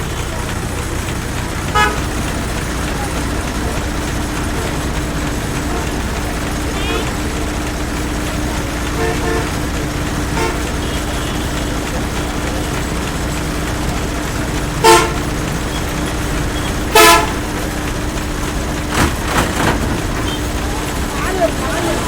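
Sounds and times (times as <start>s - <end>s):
street traffic rumble: 0.0s - 22.0s
vehicle horn honks: 1.7s - 2.1s, 6.7s - 7.2s, 9.0s - 9.6s, 10.3s - 11.7s, 14.8s - 15.4s, 16.9s - 17.4s.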